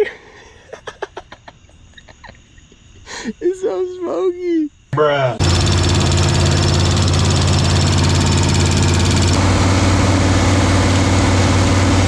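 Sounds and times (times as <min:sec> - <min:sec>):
pickup truck engine running: 0:05.4 - 0:12.0.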